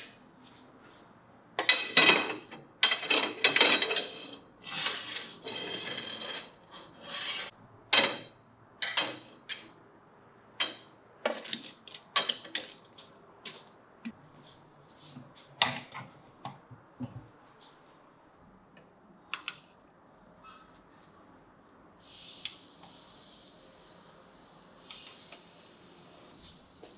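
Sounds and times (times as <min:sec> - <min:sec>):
scraping rub: 0:06.7 - 0:07.5.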